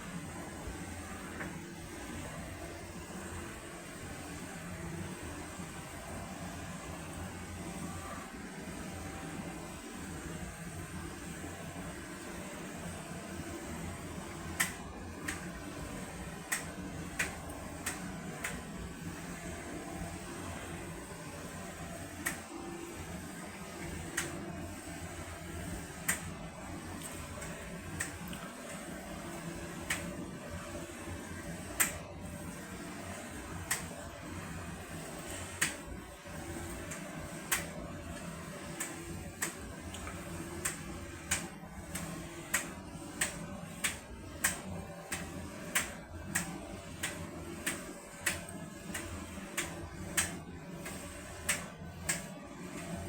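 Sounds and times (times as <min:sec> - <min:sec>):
tumble dryer humming: 0:00.0 - 0:53.0
sharp clicks of turning drum: 0:40.6 - 0:50.4.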